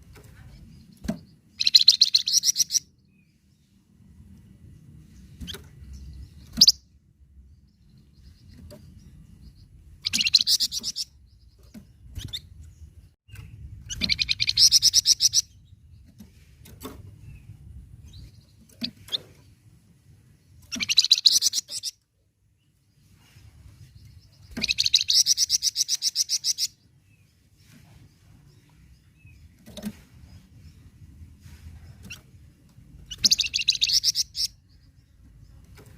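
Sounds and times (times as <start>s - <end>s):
sharp bird chirps: 1.0s - 2.9s, 5.4s - 6.9s, 9.4s - 12.5s, 20.6s - 22.0s, 24.2s - 26.8s, 33.1s - 35.0s
songbird trilling: 1.5s - 2.9s, 10.0s - 11.2s, 13.9s - 15.5s, 20.7s - 22.0s, 24.4s - 26.8s, 33.1s - 34.8s.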